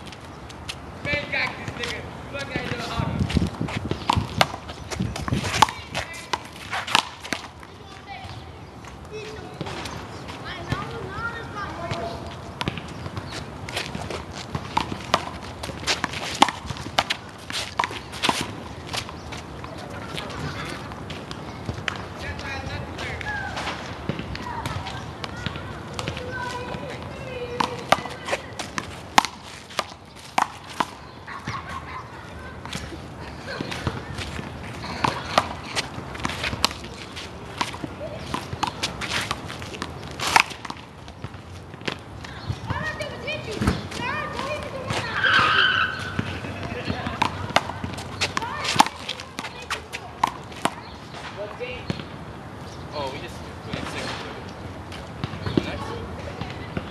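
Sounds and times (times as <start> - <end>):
quick footsteps on court: 0.0 - 52.1
shoe squeaks on court: 44.9 - 47.2.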